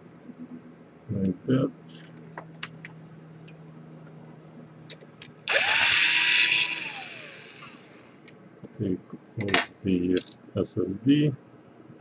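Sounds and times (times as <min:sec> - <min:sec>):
electric screwdriver whine: 0:05.5 - 0:08.2.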